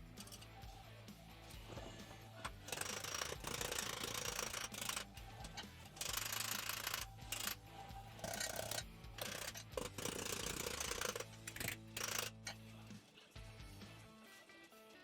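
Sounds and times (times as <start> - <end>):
background music: 0.0 - 15.0
power tool cutting sheet metal: 2.6 - 7.6, 8.2 - 12.5.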